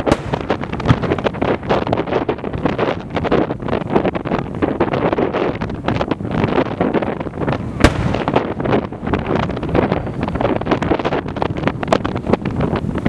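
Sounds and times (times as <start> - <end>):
loud firework bang: 0.0 - 3.4, 7.4 - 10.3
fireworks bursting and crackling: 0.0 - 12.8.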